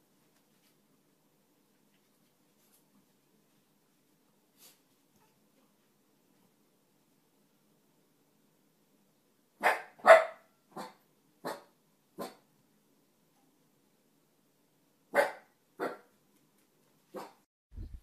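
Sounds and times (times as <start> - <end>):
dog barking: 9.6 - 12.4, 15.1 - 16.1, 17.1 - 17.4.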